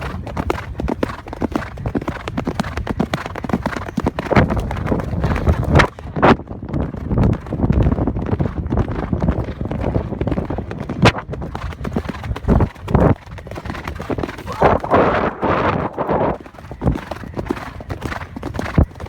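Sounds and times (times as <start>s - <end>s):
horse hoofbeats: 0.0s - 19.0s
continuous rough noise: 12.4s - 17.8s.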